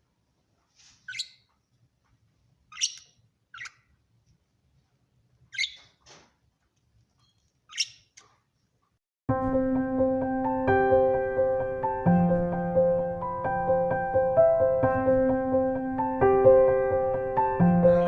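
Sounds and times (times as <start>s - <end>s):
bird chirping: 1.0s - 1.5s, 2.7s - 4.0s, 5.5s - 6.0s, 7.2s - 8.2s.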